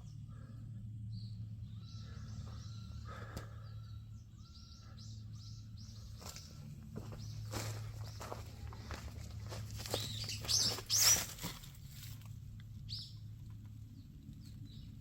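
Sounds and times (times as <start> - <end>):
small birds chirping: 0.0 - 15.0
steady low hum: 0.0 - 15.0.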